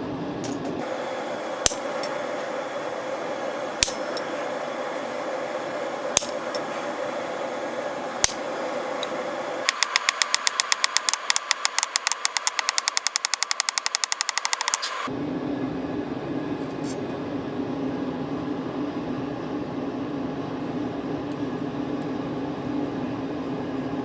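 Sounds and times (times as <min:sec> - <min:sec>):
gas forge burner rushing: 0:00.0 - 0:24.0
hammer striking metal on anvil: 0:00.5 - 0:02.4, 0:03.8 - 0:04.4, 0:06.1 - 0:06.7.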